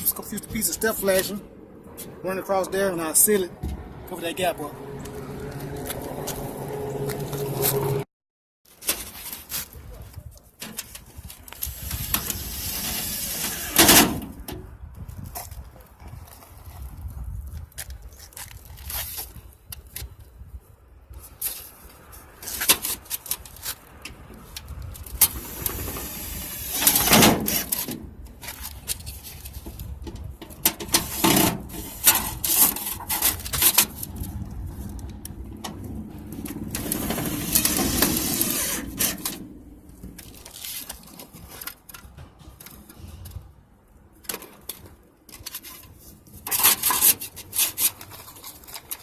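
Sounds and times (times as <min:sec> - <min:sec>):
metal scraping: 0:03.2 - 0:08.1, 0:30.5 - 0:41.6.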